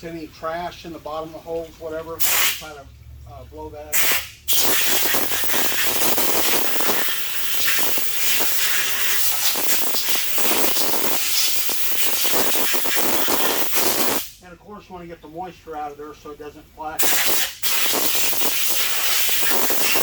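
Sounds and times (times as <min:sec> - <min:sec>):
compressed air blow gun hissing: 0:02.2 - 0:02.7, 0:03.9 - 0:14.4, 0:17.0 - 0:20.0.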